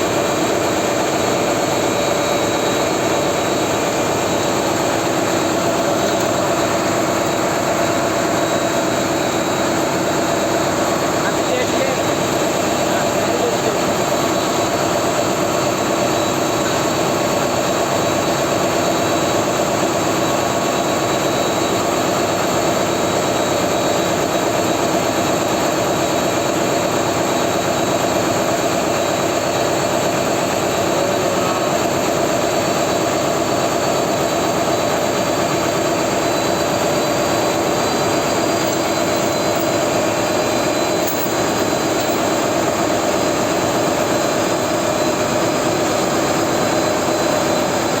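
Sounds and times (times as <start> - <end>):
diesel machinery drone: 0.0 - 48.0.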